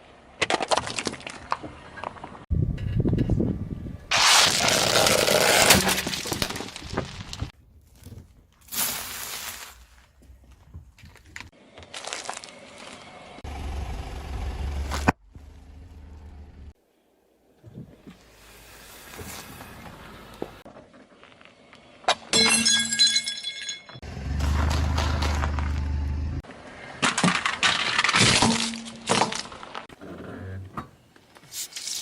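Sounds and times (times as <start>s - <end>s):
objects crunching under car tyres: 0.4s - 2.4s, 4.1s - 13.4s, 14.8s - 15.8s, 24.0s - 30.0s.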